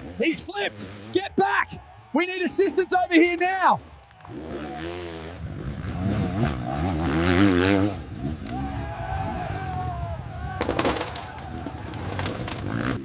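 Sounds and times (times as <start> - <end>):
dirt bike engine revving: 0.0 - 1.7, 3.1 - 9.8, 12.2 - 13.0.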